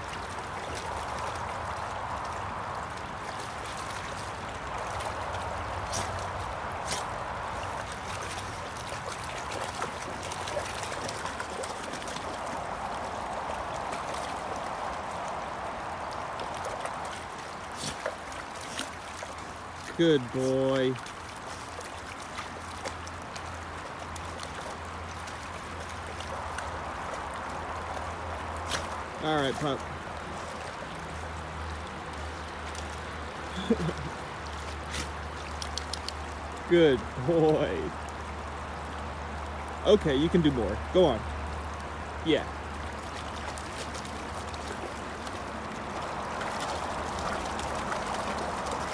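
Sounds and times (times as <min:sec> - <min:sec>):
river water rushing: 0:00.0 - 0:48.9
faint clicks: 0:35.5 - 0:36.3.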